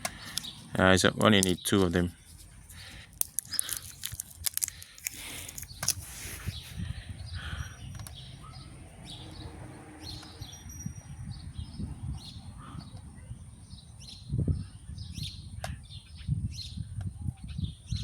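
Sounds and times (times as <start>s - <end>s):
small birds chirping: 0.0s - 18.0s
rustling handling noise: 1.2s - 6.8s.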